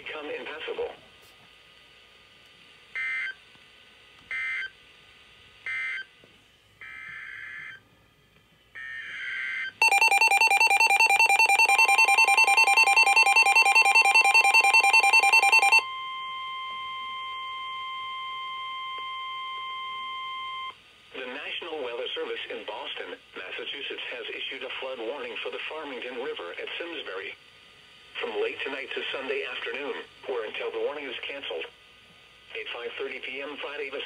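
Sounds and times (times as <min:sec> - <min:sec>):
steady warning alarm tone: 0:08.8 - 0:20.7
warbling two-tone alert: 0:09.8 - 0:15.9.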